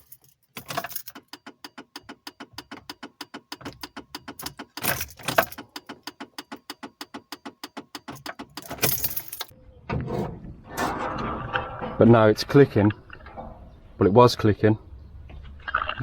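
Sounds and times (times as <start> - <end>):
starter solenoid rapid clicking: 1.1 - 8.8.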